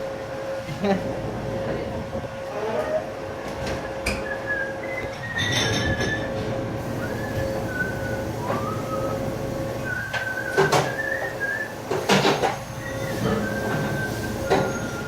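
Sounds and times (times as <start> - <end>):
dishes clattering: 5.3 - 6.3, 11.9 - 14.8.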